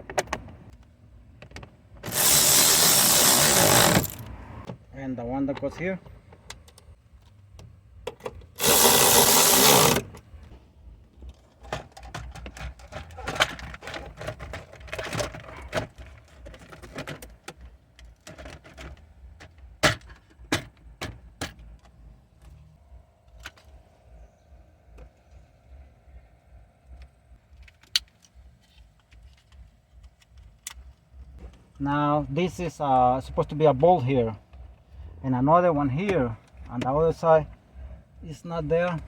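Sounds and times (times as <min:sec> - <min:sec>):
power tool running: 0:02.0 - 0:04.3, 0:08.6 - 0:10.2
tools and parts clicking: 0:02.0 - 0:04.3.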